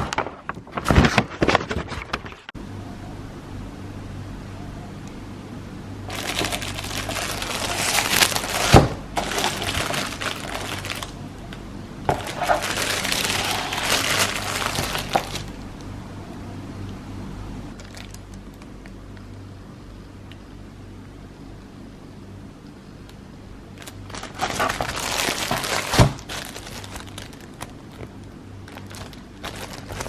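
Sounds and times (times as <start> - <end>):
packaging crinkling: 6.1 - 15.6, 17.8 - 19.0, 23.8 - 30.0.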